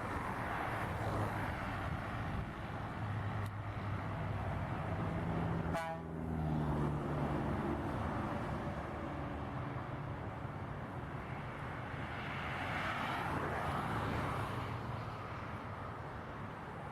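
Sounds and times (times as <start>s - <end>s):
road noise: 0.0s - 16.9s.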